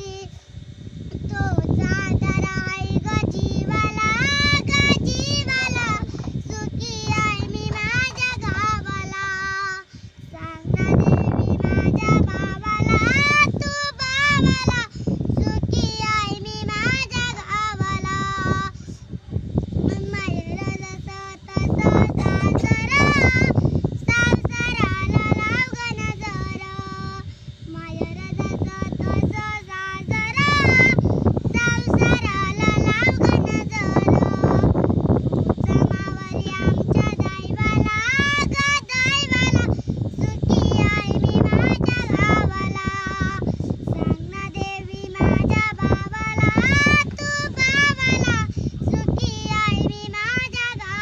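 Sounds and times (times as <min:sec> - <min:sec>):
girl singing: 0:00.0 - 0:00.3, 0:01.1 - 0:19.1, 0:19.7 - 0:51.0.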